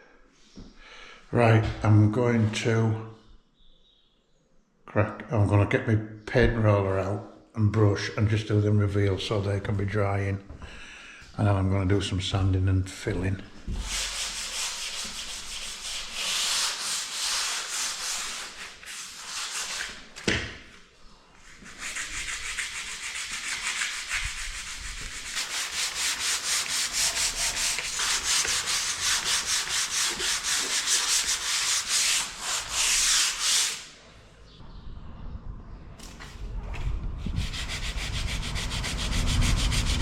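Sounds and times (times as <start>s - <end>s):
hand sanding a plastered wall: 13.0s - 20.2s, 21.4s - 34.0s, 37.2s - 40.0s.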